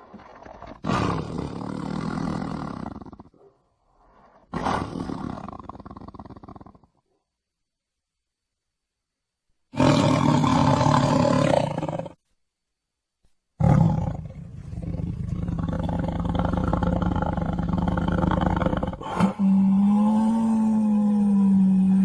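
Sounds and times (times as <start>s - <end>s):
tiger roaring: 0.0s - 3.4s, 4.0s - 6.8s, 9.7s - 12.2s, 13.6s - 22.0s.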